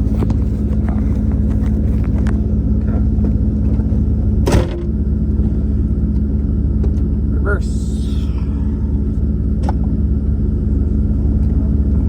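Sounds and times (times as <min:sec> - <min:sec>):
car engine running: 0:00.0 - 0:12.0
sharp clunk: 0:04.4 - 0:04.9.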